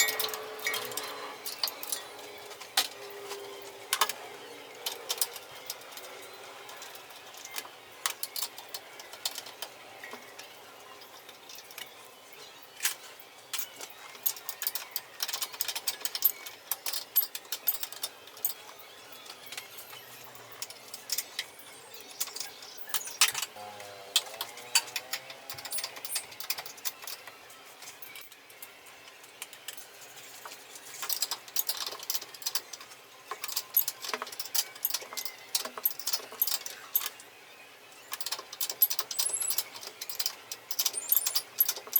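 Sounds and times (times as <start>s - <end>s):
metal tools clinking: 0.0s - 4.2s, 12.8s - 21.5s, 24.1s - 28.4s, 30.9s - 37.2s, 38.1s - 41.9s.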